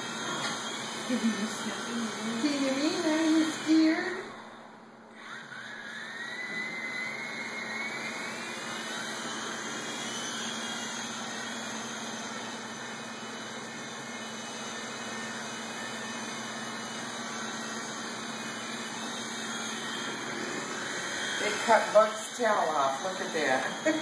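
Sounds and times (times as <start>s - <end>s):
toy helicopter rotors whirring: 5.2s - 24.0s.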